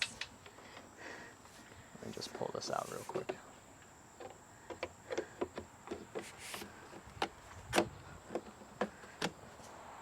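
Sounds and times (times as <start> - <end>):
scraping rustle: 1.5 - 3.3, 6.0 - 8.6
plastic parts clicking and knocking: 4.2 - 9.4.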